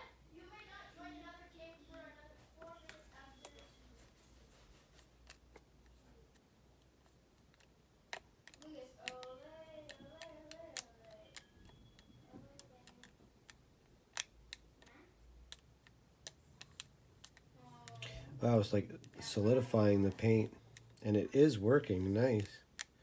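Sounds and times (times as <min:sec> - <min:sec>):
small plastic parts clicking: 0:05.0 - 0:18.2, 0:19.0 - 0:21.1, 0:21.8 - 0:23.0.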